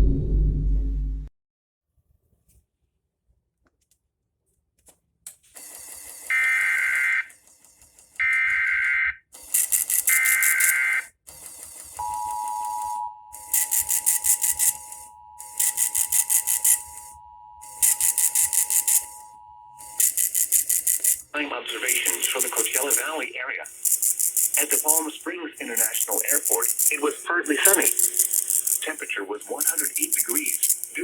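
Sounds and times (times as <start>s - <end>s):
harsh rapid pulsing buzz: 5.8s - 7.3s, 9.4s - 31.0s
screeching digital data bursts: 6.3s - 7.3s, 8.2s - 11.1s, 12.0s - 31.0s
two-tone attention signal: 6.3s - 7.3s, 10.0s - 11.0s, 12.0s - 23.3s.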